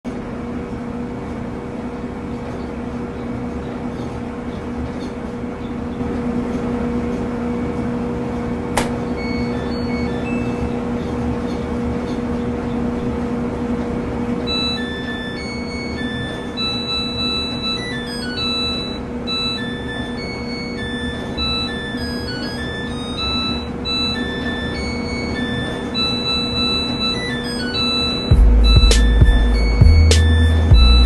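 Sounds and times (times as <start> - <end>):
microwave oven humming: 0.1 - 31.0
sharp click: 8.8 - 9.0.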